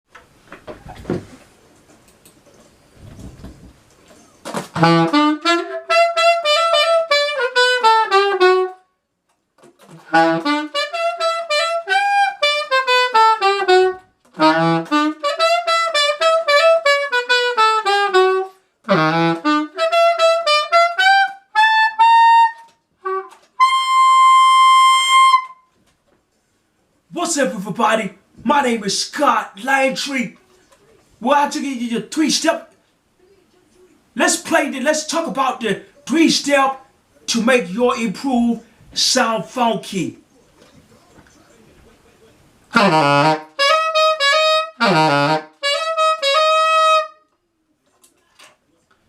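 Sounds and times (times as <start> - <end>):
alto saxophone playing: 4.7 - 8.9, 9.8 - 25.7, 42.7 - 47.4
breaths: 38.6 - 39.0.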